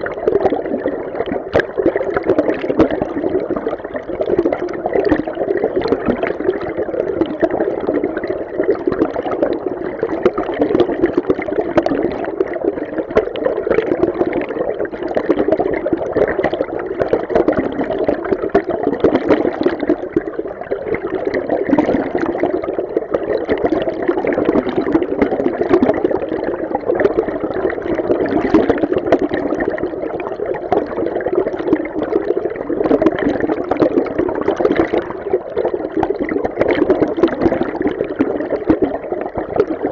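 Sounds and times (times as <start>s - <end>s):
fine bubbling: 0.0s - 39.9s
underwater stream rushing: 0.0s - 39.9s.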